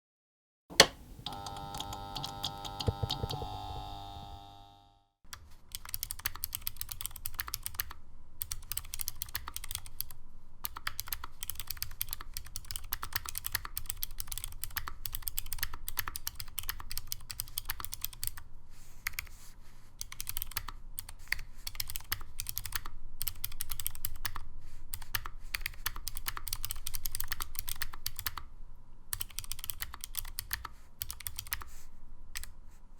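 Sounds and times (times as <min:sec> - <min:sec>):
fast typing on a keyboard: 0:05.3 - 0:18.4, 0:19.0 - 0:28.5, 0:29.1 - 0:32.6.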